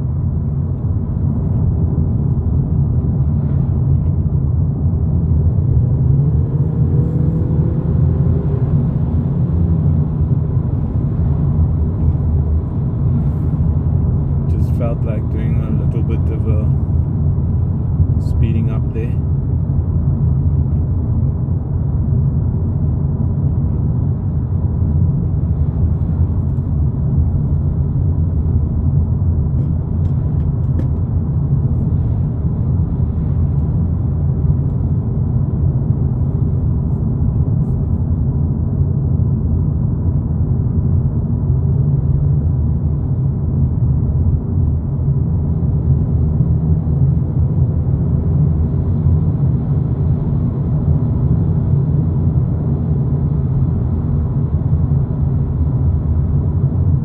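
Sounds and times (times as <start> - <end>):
road and engine rumble in car cabin: 0.0 - 57.0.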